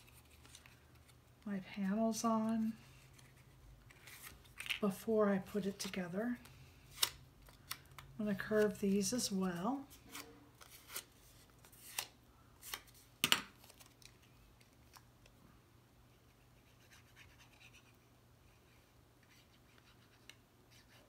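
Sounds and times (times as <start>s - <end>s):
paper rustling: 0.0s - 1.3s.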